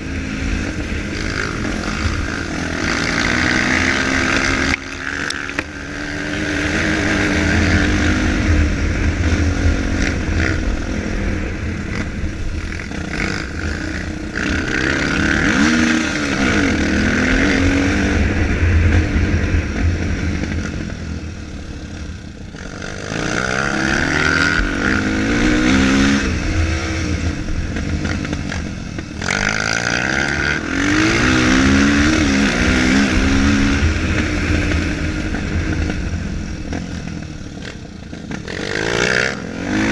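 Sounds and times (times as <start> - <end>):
dirt bike engine revving: 0.0 - 39.9.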